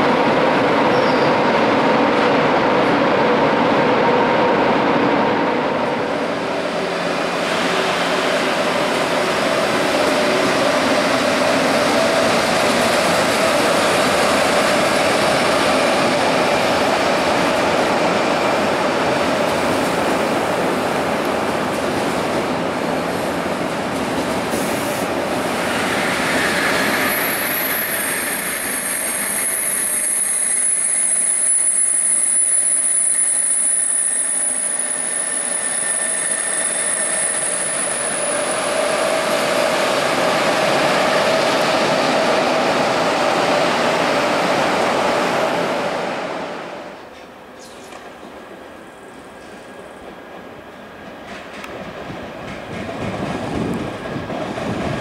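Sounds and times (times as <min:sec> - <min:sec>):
train running on track: 0:00.0 - 0:55.0
high-pitched squeal: 0:25.7 - 0:39.0.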